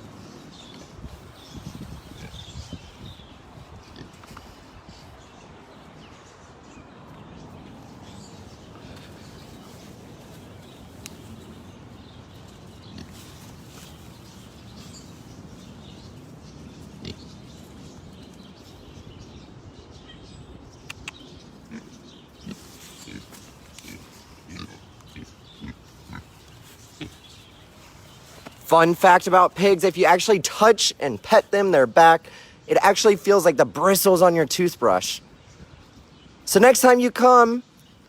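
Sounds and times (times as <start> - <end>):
pigs grunting and snuffling: 0.2 - 4.8, 12.3 - 18.5, 20.9 - 28.6
sharp clicks: 20.9 - 21.3.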